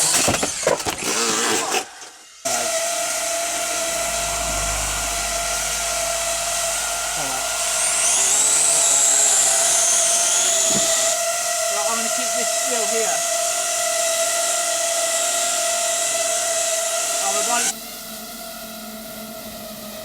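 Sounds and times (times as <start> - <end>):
toy drone motors whining: 0.0 - 20.0
thin higher whine: 2.5 - 11.2.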